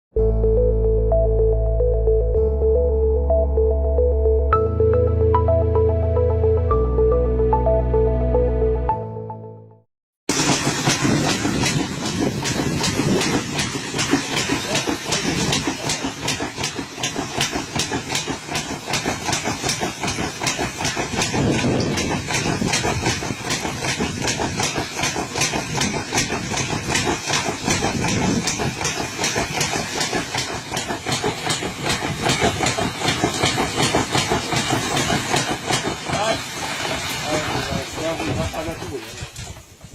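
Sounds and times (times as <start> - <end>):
threshing machine clattering: 10.3 - 39.9.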